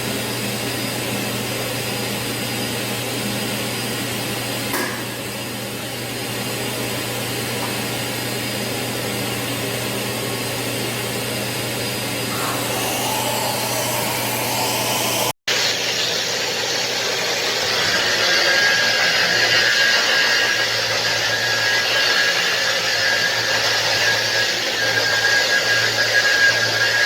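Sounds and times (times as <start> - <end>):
polisher sander whine on marble: 0.0 - 27.0.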